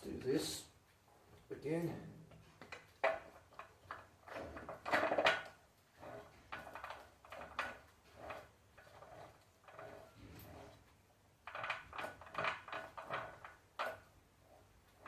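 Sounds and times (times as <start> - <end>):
metal parts clunking and scraping: 2.4 - 14.1.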